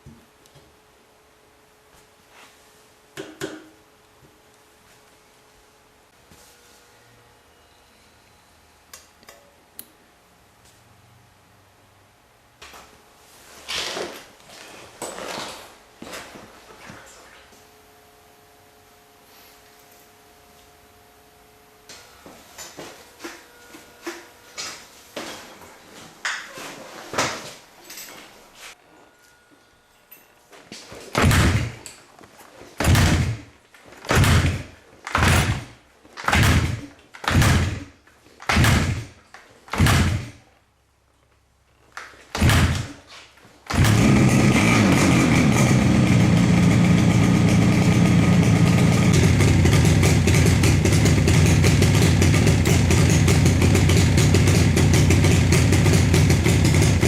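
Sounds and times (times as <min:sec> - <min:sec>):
motorcycle kick-start: 0:31.2 - 0:31.8, 0:32.8 - 0:33.5, 0:34.1 - 0:39.1, 0:39.7 - 0:40.4, 0:42.3 - 0:43.0, 0:43.7 - 0:57.0
two-stroke engine running: 0:32.8 - 0:33.4, 0:34.1 - 0:37.8, 0:43.7 - 0:57.0.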